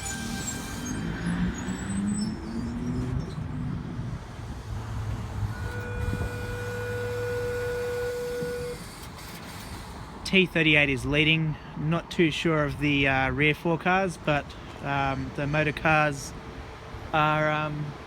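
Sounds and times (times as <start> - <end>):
train humming tone: 0.0 - 3.4, 4.6 - 9.6
train motor whine: 0.0 - 3.6, 4.4 - 10.2
electric train rumbling: 0.0 - 10.2.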